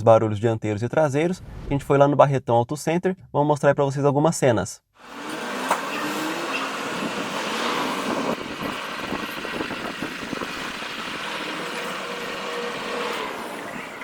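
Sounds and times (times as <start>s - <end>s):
car engine running: 5.1s - 14.0s.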